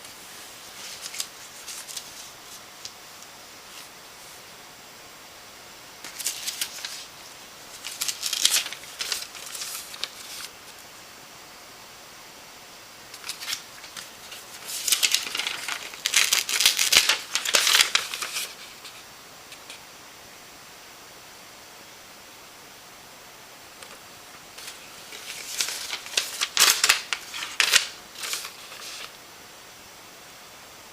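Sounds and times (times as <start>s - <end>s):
rustling and crinkling handling noise: 0.0s - 4.4s, 6.0s - 10.8s, 13.1s - 19.8s, 23.8s - 29.2s.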